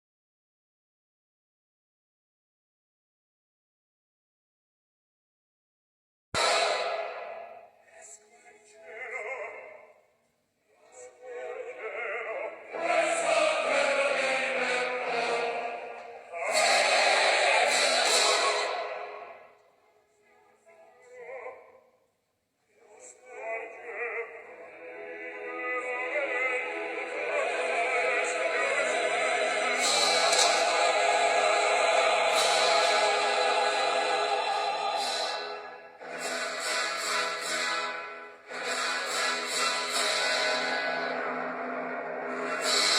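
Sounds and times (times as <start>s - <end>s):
music: 6.4s - 10.0s, 10.9s - 22.0s, 22.7s - 42.9s
operatic singing: 10.8s - 19.6s, 22.8s - 42.9s.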